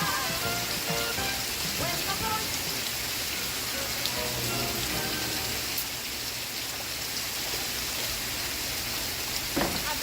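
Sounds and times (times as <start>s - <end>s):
steady rain: 0.0s - 10.0s.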